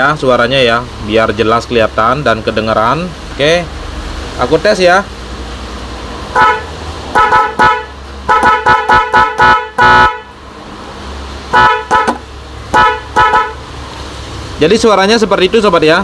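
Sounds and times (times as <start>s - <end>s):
car horns honking: 6.3s - 10.5s, 11.4s - 13.8s.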